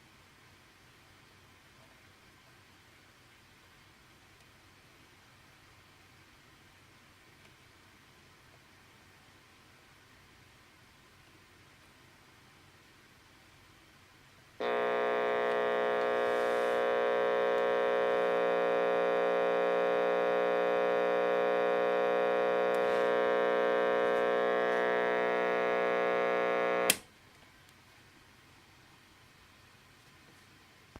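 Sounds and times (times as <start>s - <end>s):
switch click: 26.8s - 27.0s.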